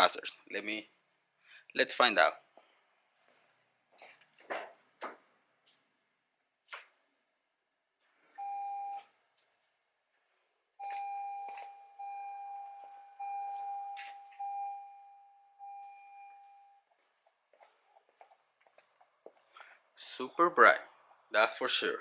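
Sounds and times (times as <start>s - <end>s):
car warning chime dinging: 8.4s - 9.0s, 10.8s - 16.9s.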